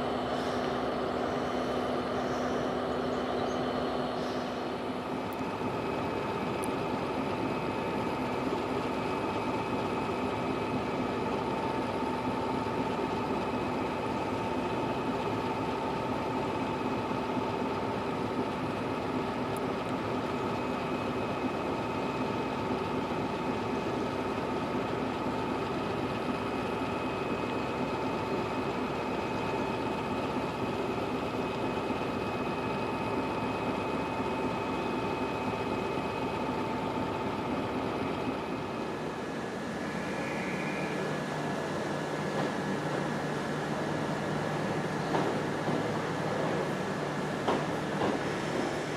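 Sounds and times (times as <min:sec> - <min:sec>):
train rumbling: 0:00.0 - 0:48.9
steady tonal hum: 0:36.6 - 0:45.0.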